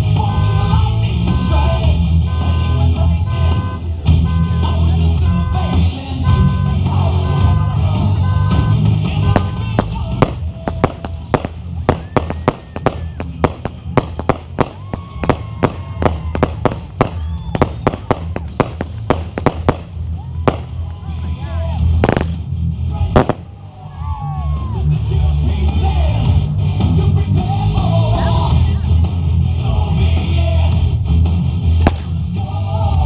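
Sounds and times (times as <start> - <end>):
music with heavy bass: 0.0 - 33.0
firework bangs and crackles: 9.1 - 23.8, 31.7 - 32.4.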